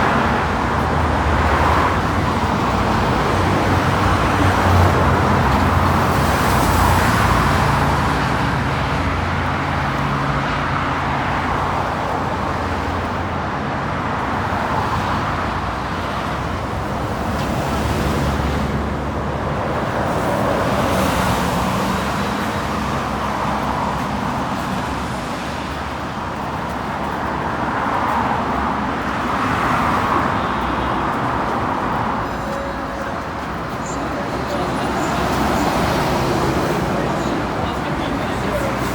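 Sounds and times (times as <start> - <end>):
city street traffic: 0.0 - 38.9.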